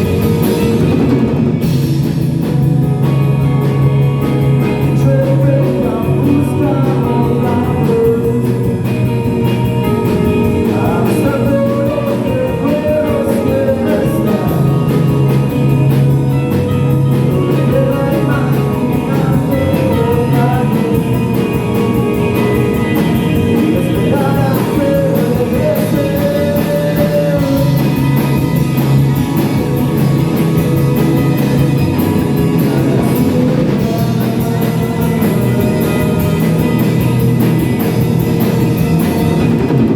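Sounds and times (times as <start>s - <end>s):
live rock band: 0.0s - 39.9s
person singing: 4.4s - 16.2s, 17.0s - 28.6s, 31.2s - 37.5s.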